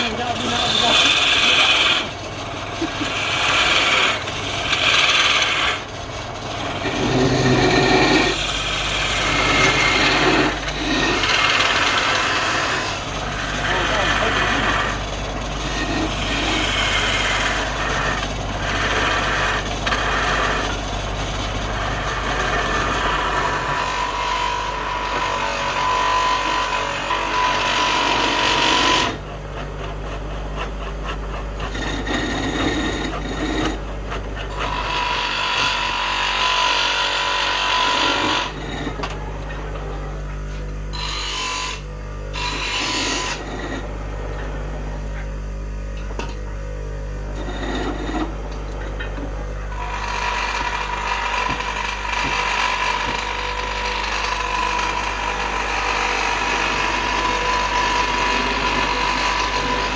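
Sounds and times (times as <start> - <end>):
tool rasping on wood: 0.0 - 39.0, 40.5 - 43.9, 47.3 - 48.4, 49.7 - 59.9
power tool motor hum: 0.0 - 39.6, 40.5 - 43.9, 47.3 - 59.9.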